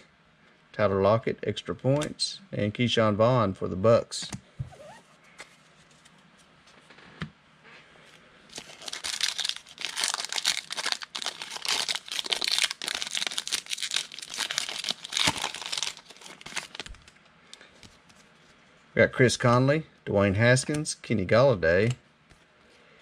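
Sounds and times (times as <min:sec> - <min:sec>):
foil wrapper tearing and crinkling: 0:08.5 - 0:17.1.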